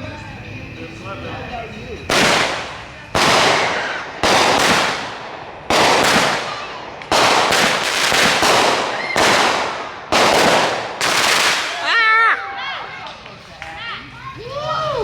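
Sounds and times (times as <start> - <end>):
fireworks crackle and hiss: 0.0 - 15.0
fireworks bangs: 2.0 - 12.3.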